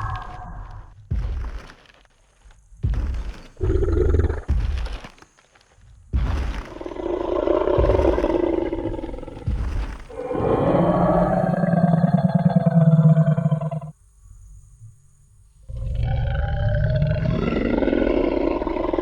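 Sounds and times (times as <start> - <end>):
heavy dinosaur footstep thuds: 1.0 - 1.8, 2.7 - 5.2, 6.1 - 12.7
dinosaur roar: 3.6 - 4.5, 6.7 - 13.9, 15.7 - 19.0.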